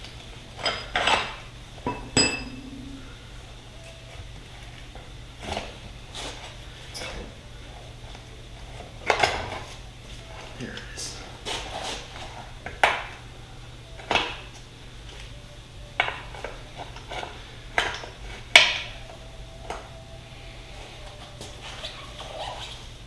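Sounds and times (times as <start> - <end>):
metal tools striking metal: 1.9 - 3.0.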